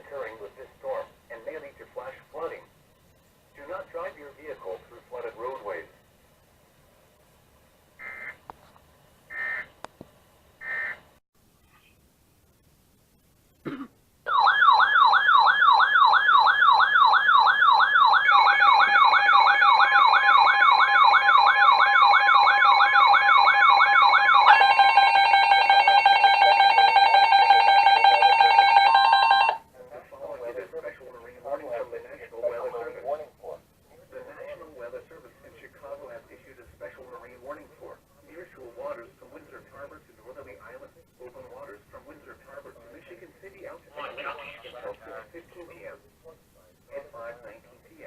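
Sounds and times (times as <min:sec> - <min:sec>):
digital data bursts: 0:21.7 - 0:29.6
multi-tone alert tone: 0:24.4 - 0:29.6
steady alert tone: 0:24.4 - 0:29.6
warbling alert tone: 0:24.4 - 0:29.6.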